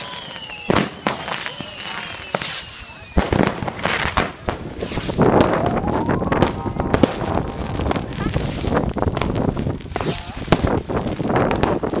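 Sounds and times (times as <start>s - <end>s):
fireworks whistles: 0.0s - 7.2s, 8.2s - 8.8s, 9.8s - 11.0s
fireworks bangs and crackles: 0.0s - 12.0s.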